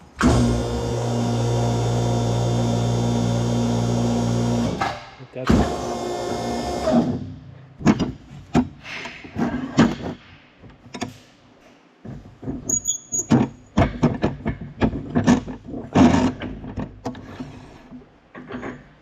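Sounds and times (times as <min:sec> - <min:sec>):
metal parts clanking and knocking: 0:07.8 - 0:11.2, 0:12.1 - 0:19.0
high squeak: 0:12.7 - 0:13.3.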